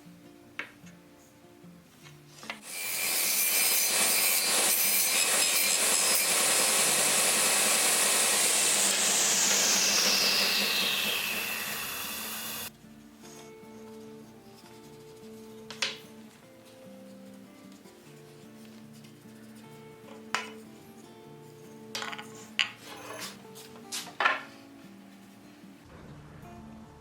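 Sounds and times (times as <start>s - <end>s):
faint guitar music: 0.0s - 2.6s, 12.7s - 27.0s
woodworking power tool running: 2.6s - 12.7s.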